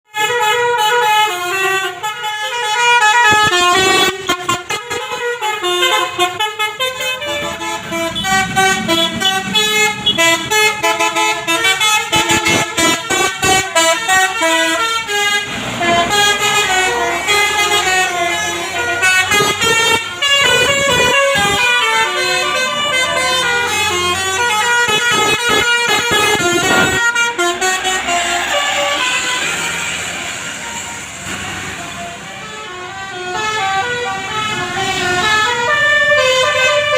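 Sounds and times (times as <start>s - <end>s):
multi-tone bus horn melody: 0.1s - 36.9s.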